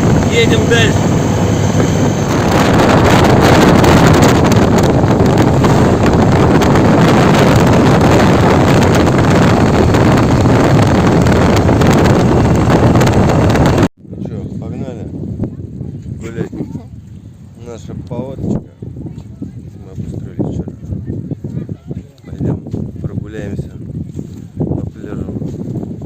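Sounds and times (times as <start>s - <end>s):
motorcycle engine: 0.0s - 13.9s
road noise: 0.0s - 13.9s
wind buffeting microphone: 0.0s - 26.0s.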